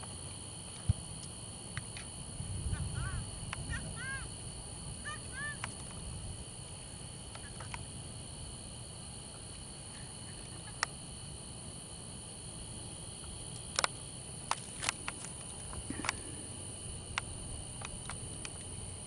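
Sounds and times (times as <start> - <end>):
crickets trilling: 0.0 - 19.0
sharp clicks: 13.5 - 15.2.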